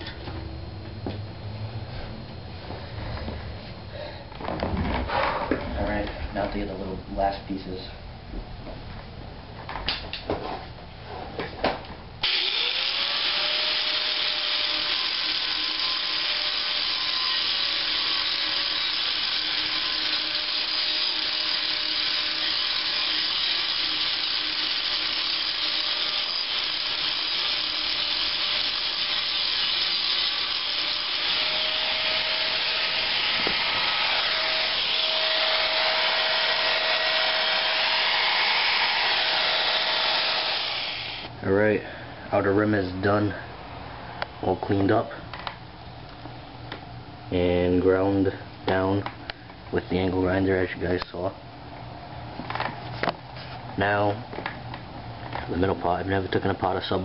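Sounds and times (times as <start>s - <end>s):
angle grinder grinding metal: 12.2s - 41.3s.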